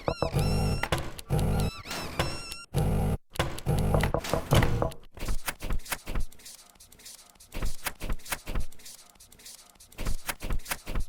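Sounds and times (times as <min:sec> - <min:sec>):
sharp clicks and knocks: 0:03.3 - 0:06.3.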